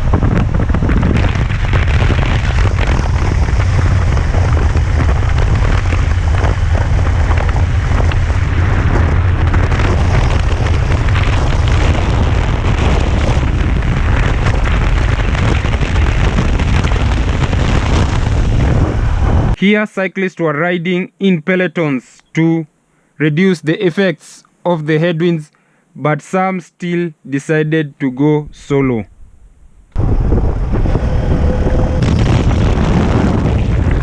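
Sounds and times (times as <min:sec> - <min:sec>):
wind blasting across microphone: 0:00.0 - 0:19.6, 0:28.4 - 0:34.0.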